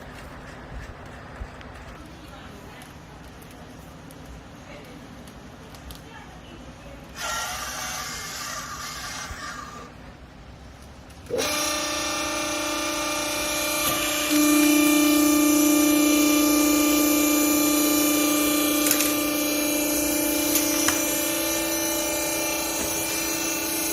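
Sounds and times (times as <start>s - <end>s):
hydraulic power unit humming: 6.9s - 23.9s.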